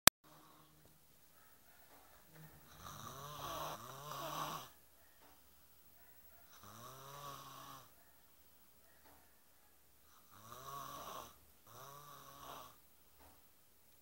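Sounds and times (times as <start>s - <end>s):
person snoring: 2.7s - 4.7s, 6.5s - 7.9s, 10.1s - 12.8s.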